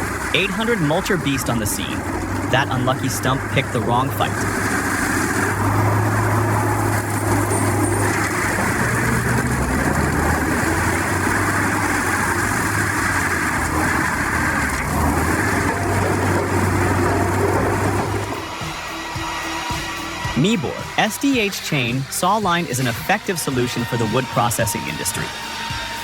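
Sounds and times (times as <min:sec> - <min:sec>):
mulching drum chewing stump: 0:00.0 - 0:20.5
mulcher engine droning: 0:00.0 - 0:26.0.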